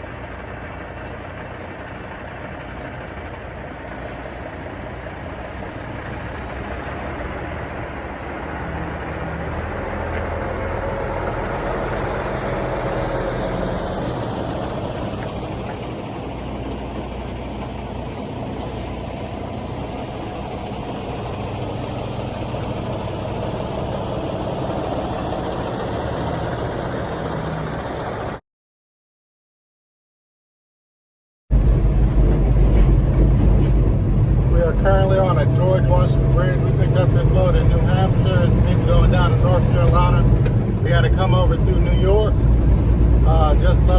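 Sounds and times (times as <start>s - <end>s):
road noise: 0.0s - 28.4s, 31.5s - 43.9s
truck engine drone: 0.0s - 28.4s, 31.5s - 43.9s.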